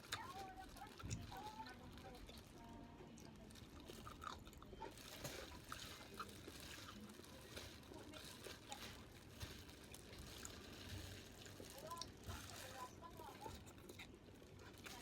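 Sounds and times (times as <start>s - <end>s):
chewing mouth smacks: 13.5s - 15.0s.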